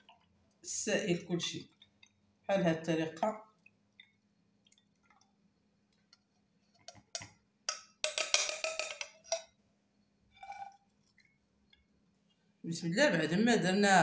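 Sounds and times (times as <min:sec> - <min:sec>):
utensils and glass bottle knocking: 0:06.9 - 0:09.5.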